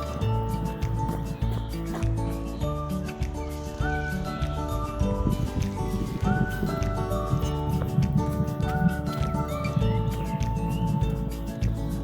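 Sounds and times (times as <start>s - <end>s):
synth chords with low beat: 5.0s - 12.0s.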